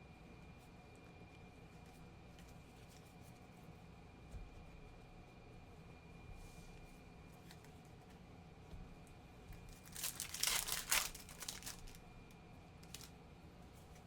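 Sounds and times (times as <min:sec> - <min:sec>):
foil wrapper tearing and crinkling: 0:09.7 - 0:12.0, 0:12.8 - 0:13.1.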